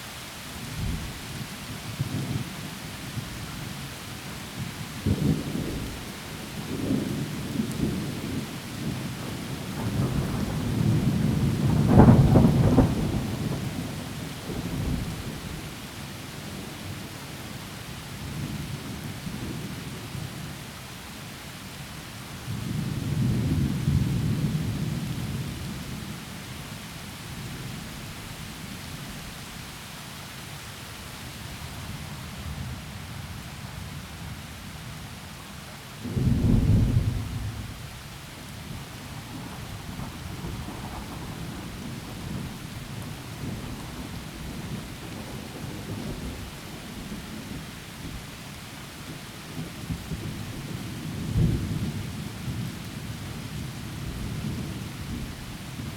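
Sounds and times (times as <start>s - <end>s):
heavy rain in a forest: 0.0s - 55.9s
rolling thunder: 4.6s - 15.6s, 36.1s - 38.0s, 38.6s - 48.2s, 49.1s - 55.4s.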